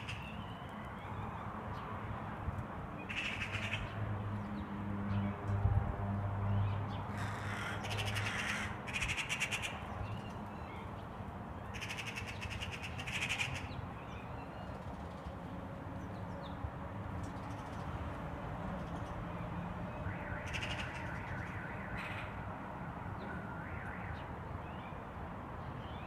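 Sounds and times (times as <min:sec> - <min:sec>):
harsh rattling bird calls: 0:00.0 - 0:01.2, 0:03.0 - 0:04.0, 0:07.0 - 0:10.9, 0:11.6 - 0:15.3, 0:20.4 - 0:21.4.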